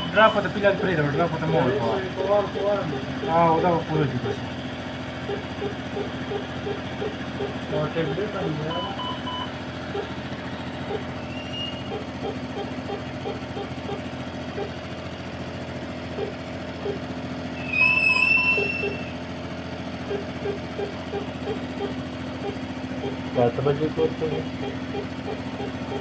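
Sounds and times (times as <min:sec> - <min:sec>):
motor vehicle running: 0:00.0 - 0:26.0
loud high-pitched tone: 0:16.8 - 0:19.2.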